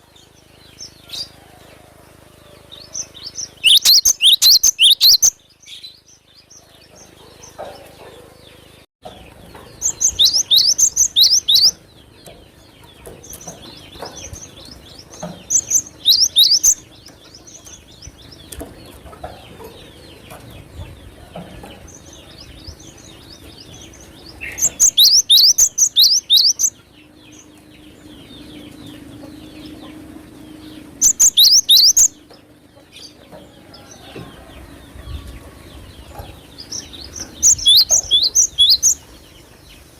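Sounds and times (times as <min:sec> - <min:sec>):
faint bird twittering: 0:02.3 - 0:08.8, 0:09.6 - 0:19.0, 0:19.6 - 0:39.9
bird singing rapid high notes: 0:03.1 - 0:05.9, 0:09.8 - 0:11.8, 0:15.4 - 0:16.9, 0:24.0 - 0:26.8, 0:30.8 - 0:32.2, 0:36.7 - 0:39.1.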